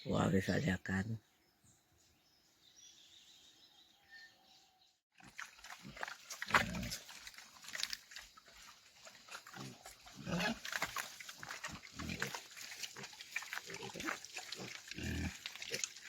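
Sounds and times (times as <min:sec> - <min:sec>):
pigs grunting: 0:05.2 - 0:16.0.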